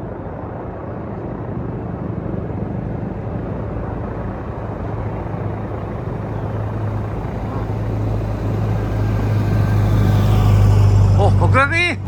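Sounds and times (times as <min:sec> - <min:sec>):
outdoor noise: 0:00.0 - 0:12.0
vehicle engine running: 0:03.1 - 0:12.0.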